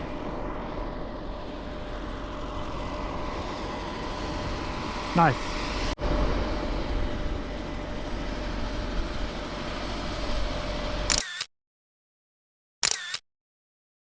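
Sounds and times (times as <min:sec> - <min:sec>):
helicopter cabin engine and rotor: 0:00.0 - 0:11.2
brief click: 0:12.8 - 0:13.2.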